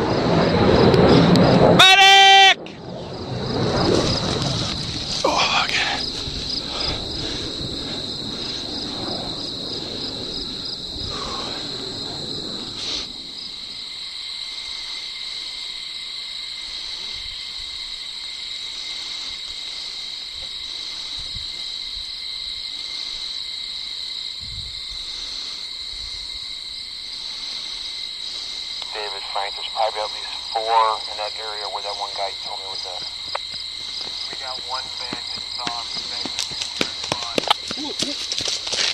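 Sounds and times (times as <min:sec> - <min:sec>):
crickets trilling: 0:00.0 - 0:38.9
rustling noise: 0:03.9 - 0:05.3.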